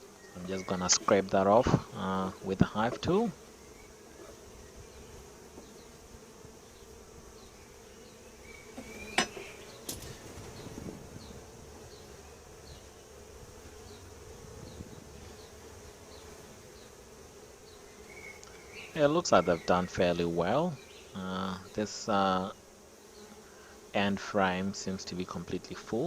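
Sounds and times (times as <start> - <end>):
honeybees humming: 0.0 - 26.0
hive tool striking wooden frame: 8.6 - 10.6.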